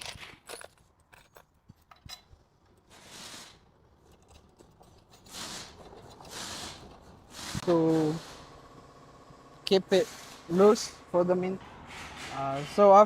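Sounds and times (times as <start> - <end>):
metallic clicks of bolts and nuts: 0.0 - 3.0, 3.9 - 7.2.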